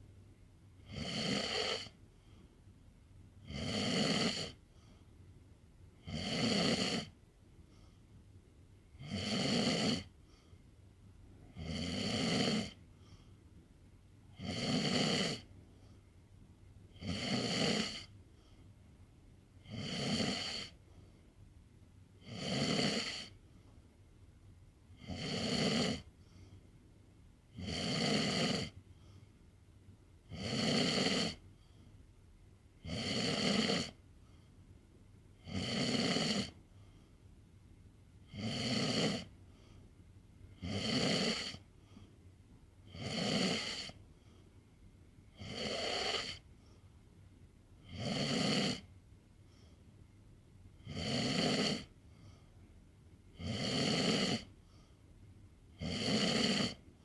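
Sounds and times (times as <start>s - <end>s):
pet snoring: 0.8s - 2.0s, 3.4s - 4.6s, 6.0s - 7.2s, 9.0s - 10.4s, 11.5s - 12.8s, 14.3s - 15.5s, 16.9s - 18.1s, 19.6s - 20.8s, 22.2s - 23.4s, 25.0s - 26.4s, 27.5s - 28.8s, 30.2s - 31.4s, 32.8s - 34.0s, 35.4s - 36.6s, 38.2s - 39.7s, 40.5s - 42.0s, 42.8s - 44.0s, 45.3s - 46.5s, 47.8s - 48.9s, 50.8s - 52.4s, 53.3s - 54.8s, 55.7s - 56.9s.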